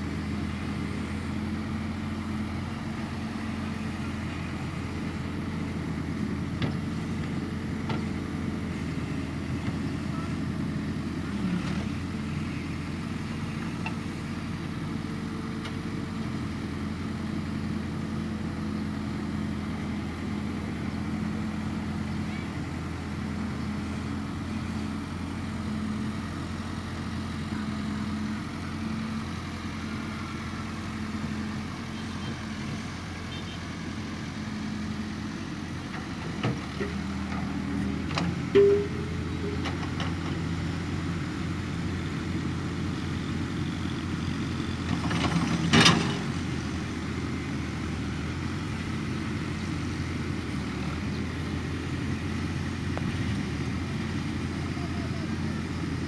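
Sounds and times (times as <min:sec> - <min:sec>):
excavator engine running: 0:00.0 - 0:56.0
clattering noise: 0:38.1 - 0:40.4.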